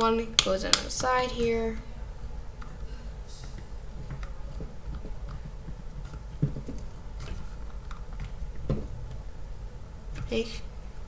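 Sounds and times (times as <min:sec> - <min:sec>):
plastic parts clicking: 0:00.0 - 0:01.0
low steady hum: 0:00.0 - 0:11.0.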